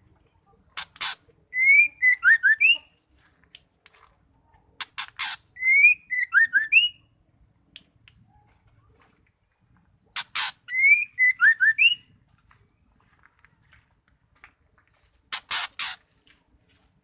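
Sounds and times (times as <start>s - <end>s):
bird calling rasps and whistles: 0.9s - 3.0s, 4.8s - 7.1s, 10.2s - 12.1s.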